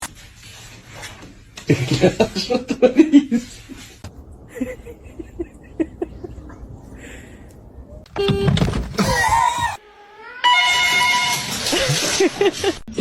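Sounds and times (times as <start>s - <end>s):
person laughing breathily: 2.0s - 8.0s.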